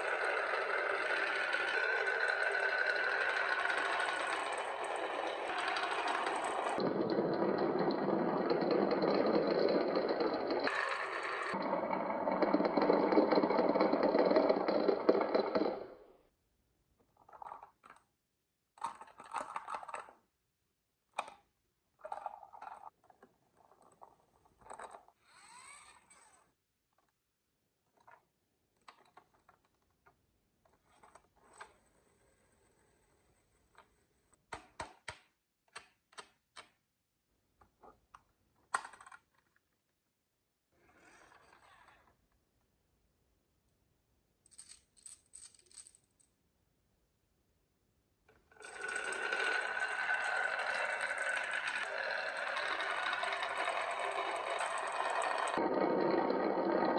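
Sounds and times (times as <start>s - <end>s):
marbles rattling down wooden track: 0.0s - 16.0s, 48.6s - 56.9s.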